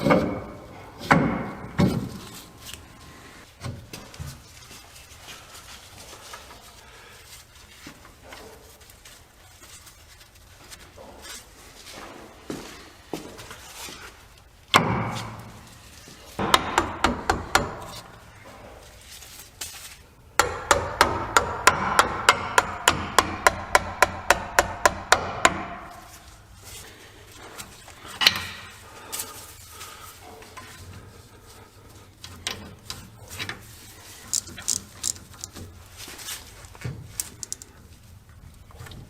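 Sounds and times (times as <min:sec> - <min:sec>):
hammer striking metal: 0:16.4 - 0:17.9, 0:20.4 - 0:26.1.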